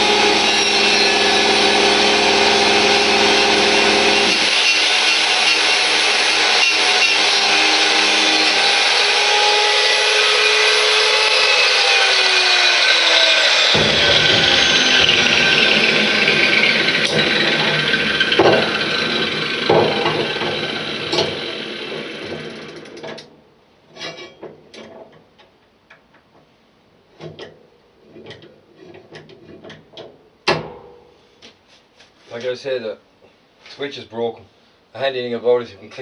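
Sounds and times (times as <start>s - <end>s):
power tool grinding metal: 0.0s - 23.0s.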